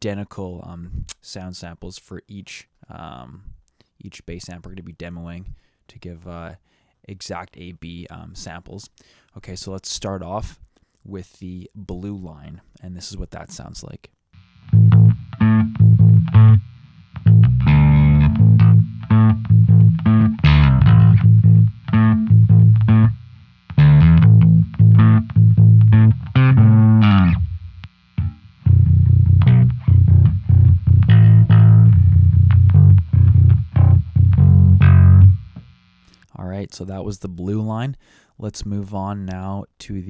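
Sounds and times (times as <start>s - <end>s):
bass guitar riff: 14.4s - 36.2s.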